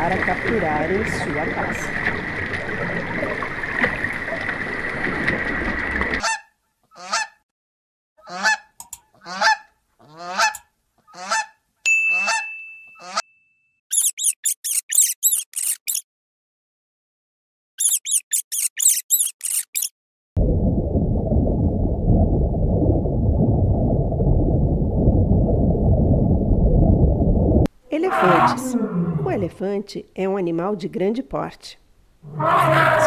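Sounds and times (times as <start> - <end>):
high bird chirps: 13.9 - 16.0, 17.8 - 19.9.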